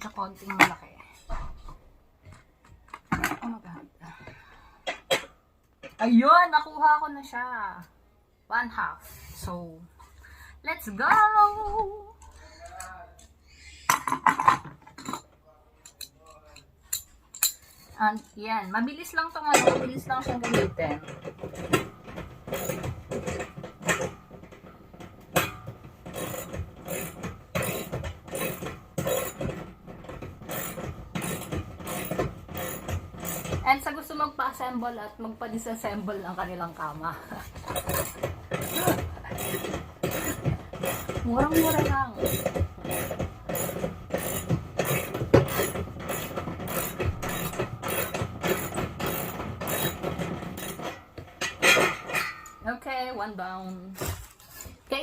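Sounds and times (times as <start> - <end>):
ratchet wrench clicking: 26.1 - 29.5, 30.5 - 33.6, 37.7 - 50.0.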